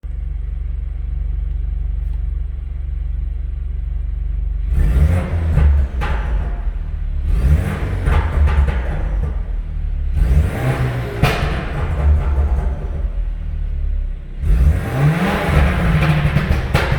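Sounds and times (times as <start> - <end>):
car engine idling and revving: 0.0 - 16.9
exhaust crackles and pops: 4.3 - 16.9.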